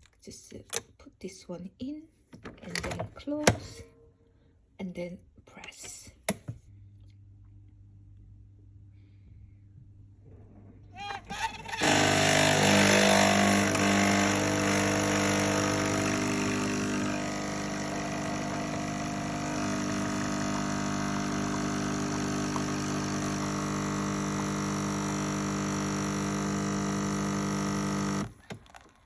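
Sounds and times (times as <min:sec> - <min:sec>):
espresso machine pump buzzing: 0:11.6 - 0:28.3.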